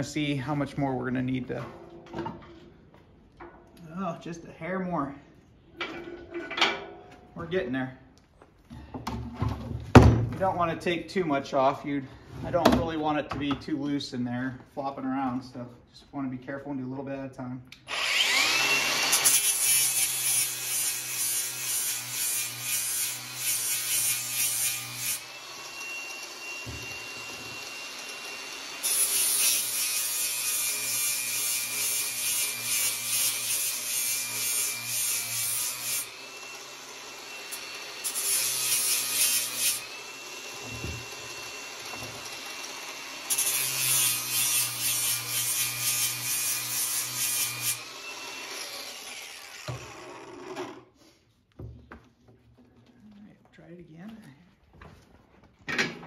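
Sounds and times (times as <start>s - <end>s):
angle grinder grinding steel: 17.8s - 50.9s.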